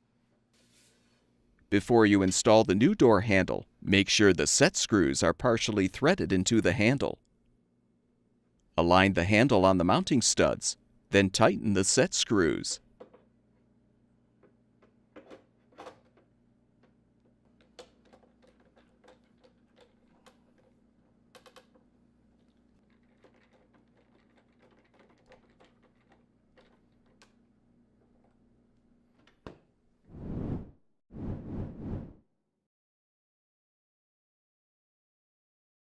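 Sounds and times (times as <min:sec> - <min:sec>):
short rush of noise: 0:30.1 - 0:32.2.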